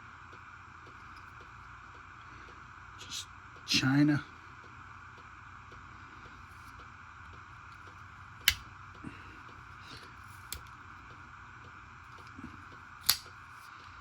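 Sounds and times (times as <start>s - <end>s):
steady background hum: 0.0s - 14.0s
folding knives clicking: 8.4s - 8.6s, 9.8s - 10.7s, 13.0s - 13.7s.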